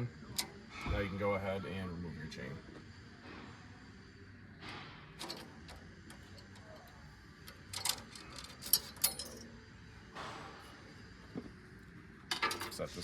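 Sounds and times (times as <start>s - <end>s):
chain rattling: 7.7s - 9.5s
saw chain links clinking: 7.7s - 9.5s.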